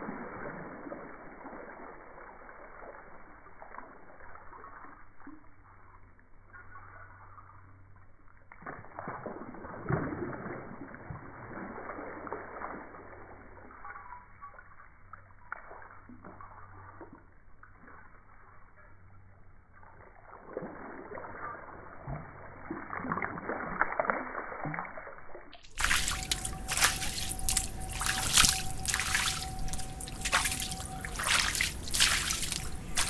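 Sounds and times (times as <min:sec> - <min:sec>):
muffled water splashing: 0:19.6 - 0:33.0.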